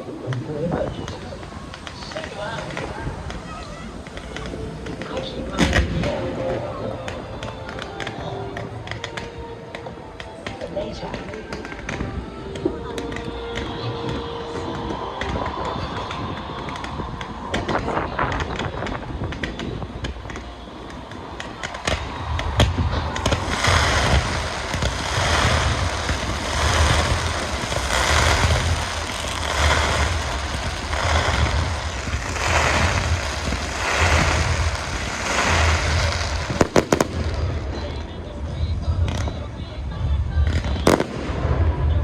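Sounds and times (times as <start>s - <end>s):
fireworks crackles and pops: 0.0s - 42.0s
booming firework bursts: 15.2s - 39.4s, 40.4s - 42.0s.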